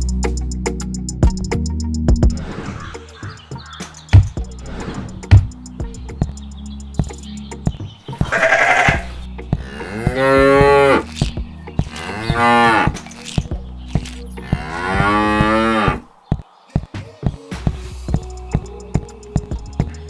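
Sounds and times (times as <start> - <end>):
background music with steady beat: 0.0 - 20.0
cow mooing: 8.2 - 11.2, 11.9 - 13.2, 14.4 - 16.0.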